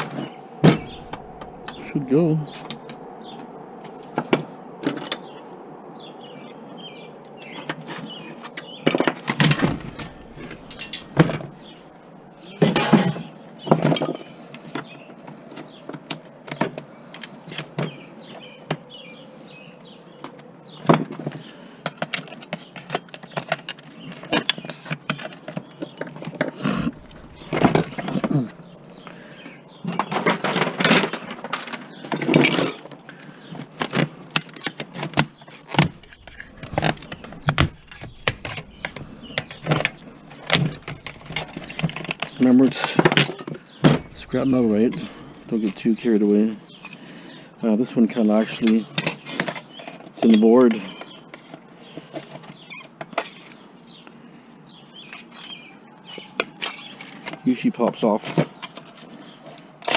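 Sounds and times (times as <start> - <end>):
plastic and metal parts clattering: 8.8 - 11.6, 29.9 - 45.1.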